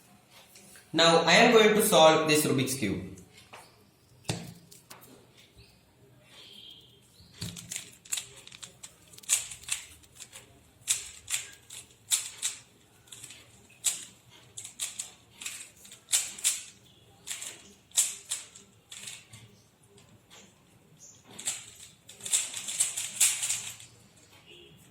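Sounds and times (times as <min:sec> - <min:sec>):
puzzle cube plastic clicks: 0:07.4 - 0:19.4, 0:21.4 - 0:23.9.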